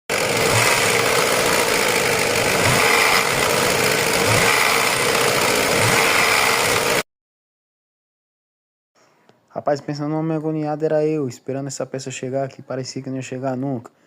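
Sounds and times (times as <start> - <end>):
engine with mechanical rattle: 0.1 - 7.0.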